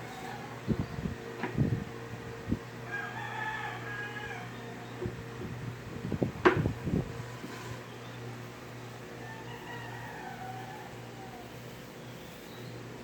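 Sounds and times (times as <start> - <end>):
steady low hum: 0.0 - 13.0
rooster crowing: 2.8 - 5.0, 9.1 - 11.8.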